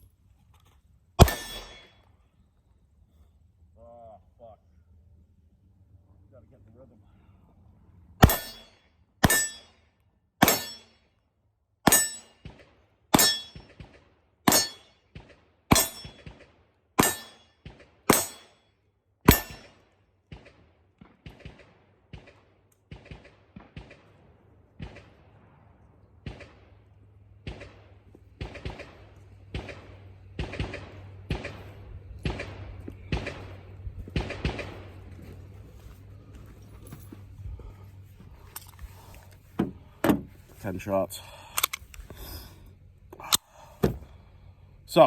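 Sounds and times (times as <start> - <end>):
handgun shots: 1.2 - 1.9, 8.2 - 8.6, 10.4 - 10.8, 11.9 - 16.4, 17.0 - 18.5, 19.3 - 20.5.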